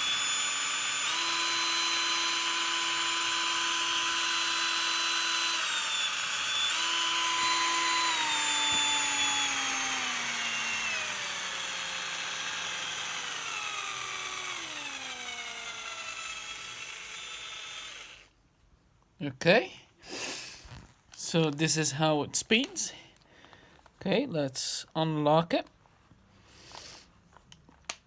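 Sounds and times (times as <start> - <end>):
cordless drill motor whining: 0.0 - 18.3.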